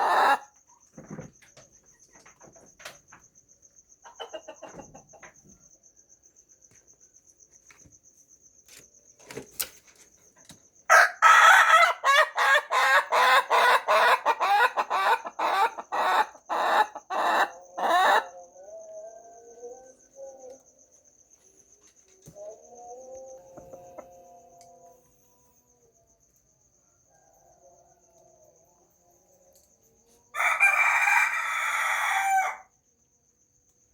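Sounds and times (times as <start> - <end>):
rooster crowing: 0.0 - 0.5, 10.9 - 20.2, 30.3 - 32.8
high insect trill: 0.0 - 33.9.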